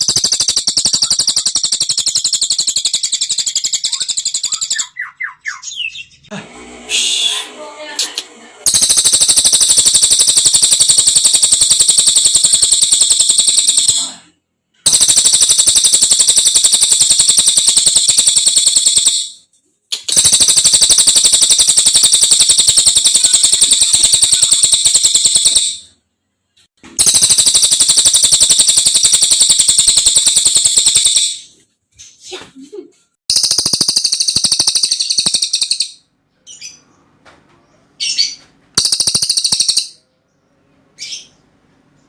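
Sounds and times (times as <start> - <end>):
songbird rattling trills: 0.0 - 5.0, 8.7 - 14.2, 14.9 - 19.4, 20.0 - 25.9, 27.0 - 31.6, 33.3 - 36.0, 38.8 - 40.0.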